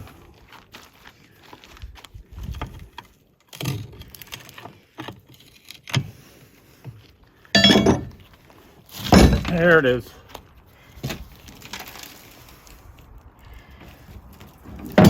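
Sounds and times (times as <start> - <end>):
metal knocks and clanks: 7.6 - 8.2.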